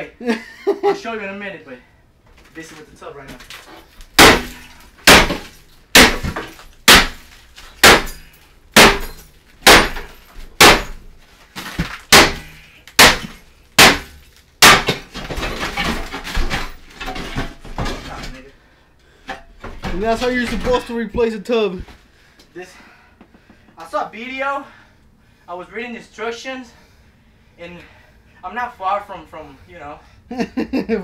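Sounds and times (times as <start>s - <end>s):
broken pieces clattering: 3.3s - 18.4s
axe hitting bathtub: 4.2s - 7.2s, 7.8s - 8.2s, 8.8s - 11.0s, 11.6s - 17.9s.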